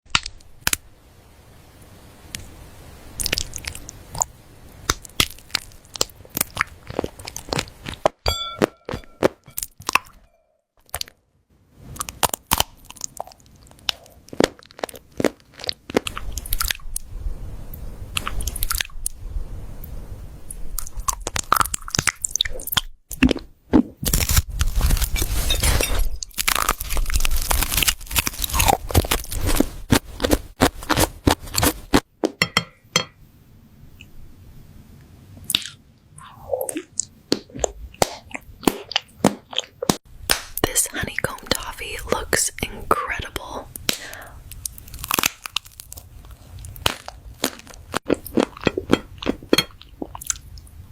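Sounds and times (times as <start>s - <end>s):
crunchy chewing: 4.9s - 8.2s, 12.0s - 16.9s, 24.0s - 32.1s, 44.5s - 50.7s.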